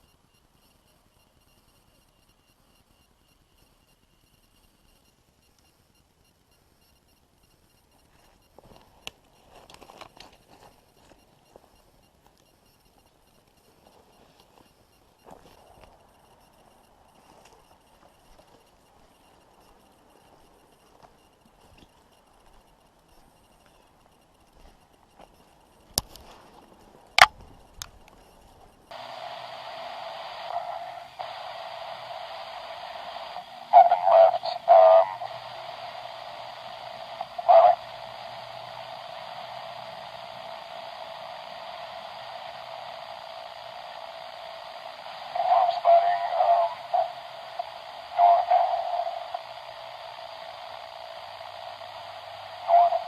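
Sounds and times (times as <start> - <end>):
radio static hiss: 0.0 - 53.0
sharp clicks: 27.2 - 28.0
garbled radio bursts: 28.9 - 53.0.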